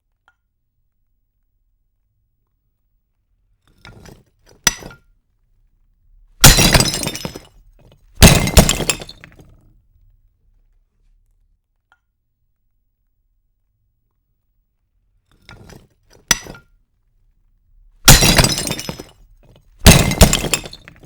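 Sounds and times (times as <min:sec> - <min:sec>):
glass cracking: 0:06.4 - 0:07.5, 0:08.2 - 0:09.4, 0:18.1 - 0:19.2, 0:19.8 - 0:21.0
glass smashing: 0:06.4 - 0:07.5, 0:08.2 - 0:09.4, 0:18.1 - 0:19.2, 0:19.8 - 0:21.0.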